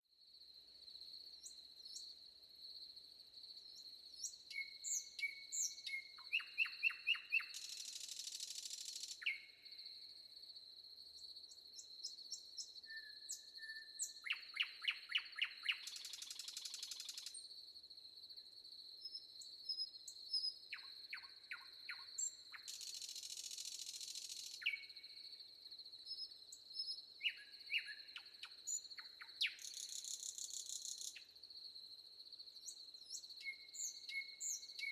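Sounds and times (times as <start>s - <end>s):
forest birds singing: 1.4s - 2.2s, 3.6s - 9.9s, 11.2s - 17.5s, 19.0s - 25.4s, 26.0s - 31.4s, 32.6s - 34.9s.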